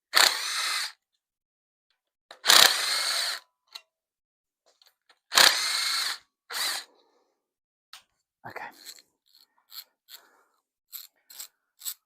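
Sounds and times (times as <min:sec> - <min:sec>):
power drill spinning out bolts: 0:00.1 - 0:01.0, 0:02.3 - 0:03.4, 0:05.2 - 0:06.9, 0:10.9 - 0:12.0.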